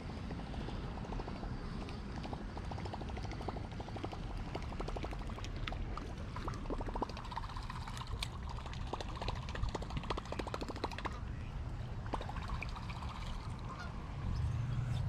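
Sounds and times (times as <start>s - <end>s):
water splashing and trickling: 2.4s - 15.0s.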